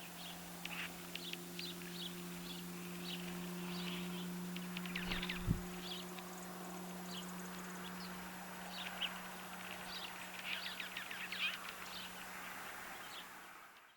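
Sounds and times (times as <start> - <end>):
songbirds chip calls: 0.2 - 6.2
steady low hum: 1.2 - 8.5.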